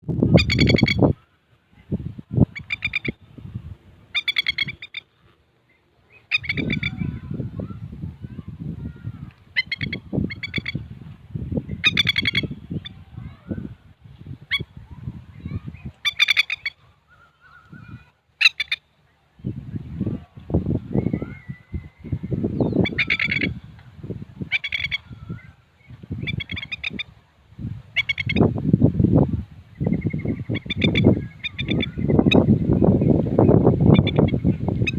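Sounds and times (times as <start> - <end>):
bird chattering alarm calls: 0.3 - 1.2, 2.5 - 3.2, 4.1 - 5.1, 6.1 - 7.2, 9.6 - 10.8, 11.8 - 13.0, 16.0 - 18.9, 22.6 - 23.6, 24.5 - 25.5, 26.1 - 27.1, 28.0 - 28.5, 29.8 - 32.5.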